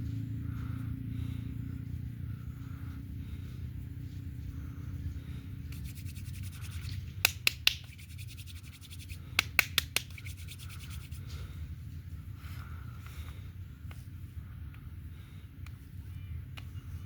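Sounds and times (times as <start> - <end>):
steady low hum: 0.0 - 17.0
fast rasping rub: 5.6 - 11.4.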